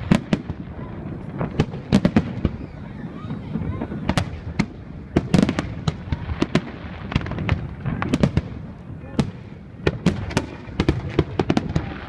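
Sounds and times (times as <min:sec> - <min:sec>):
fireworks bangs and pops: 0:00.0 - 0:12.0.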